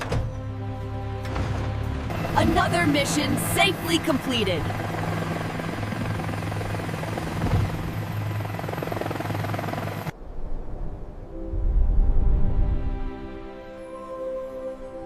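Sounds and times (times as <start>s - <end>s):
music: 0.0s - 6.4s, 11.3s - 15.0s
helicopter rotor and engine whir: 1.8s - 10.2s.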